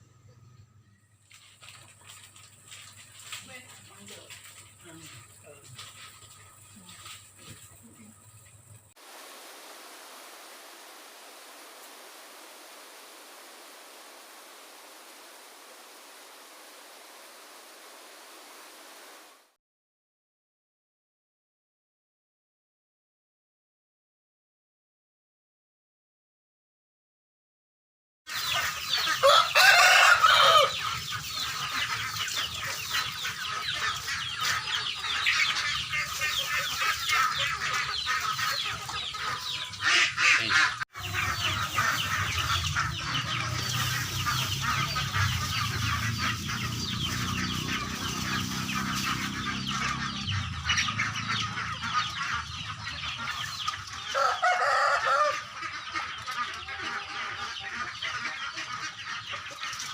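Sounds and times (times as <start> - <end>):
chickens clucking: 28.3 - 59.9.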